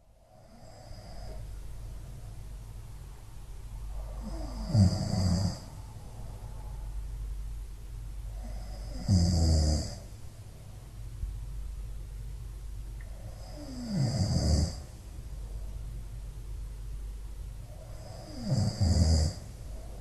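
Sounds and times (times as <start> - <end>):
cat snoring: 0.4 - 1.4, 4.0 - 5.7, 8.3 - 10.0, 13.3 - 14.9, 17.8 - 19.6.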